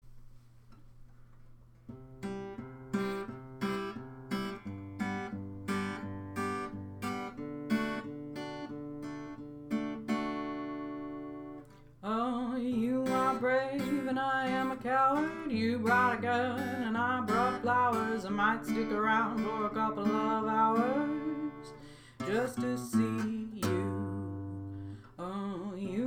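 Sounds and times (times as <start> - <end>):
acoustic guitar strumming chords: 1.9 - 26.0
person singing: 12.0 - 26.0.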